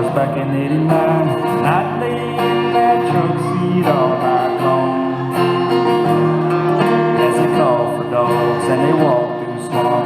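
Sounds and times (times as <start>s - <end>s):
live country music with guitar: 0.0s - 10.0s.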